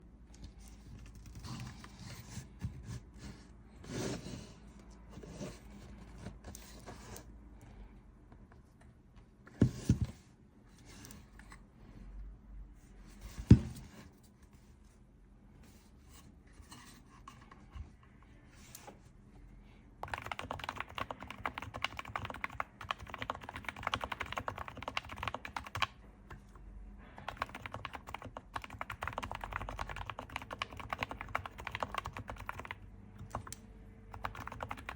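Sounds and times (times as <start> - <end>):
keyboard typing: 20.0 - 26.6, 27.2 - 34.9.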